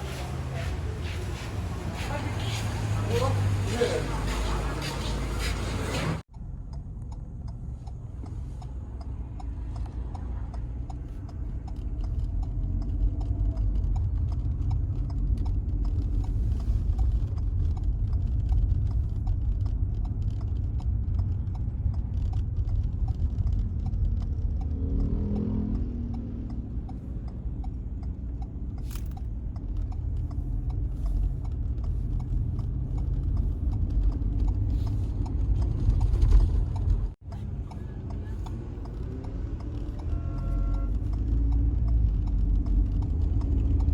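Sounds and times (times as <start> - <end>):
road and engine rumble: 0.0 - 43.9.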